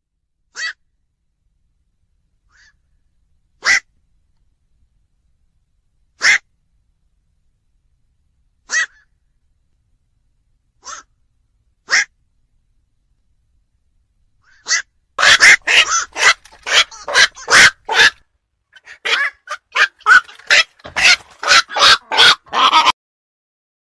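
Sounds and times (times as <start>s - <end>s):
night heron barking calls: 0.5s - 0.9s, 2.5s - 2.9s, 3.6s - 4.0s, 6.2s - 6.5s, 8.6s - 9.2s, 10.8s - 11.2s, 11.8s - 12.2s, 14.4s - 22.9s.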